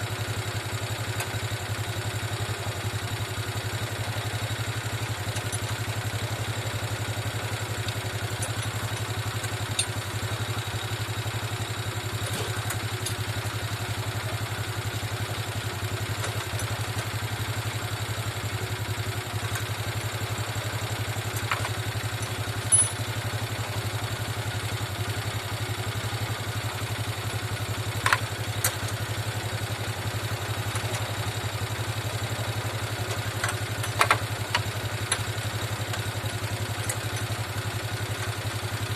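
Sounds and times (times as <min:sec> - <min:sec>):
motorcycle engine idling: 0:00.0 - 0:38.9.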